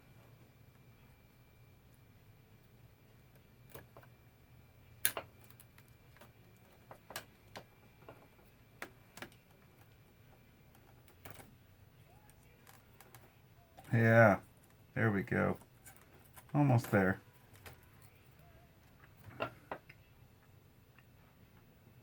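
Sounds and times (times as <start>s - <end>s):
faint steady hum: 0.0s - 22.0s
tools clicking and tapping: 5.0s - 9.9s.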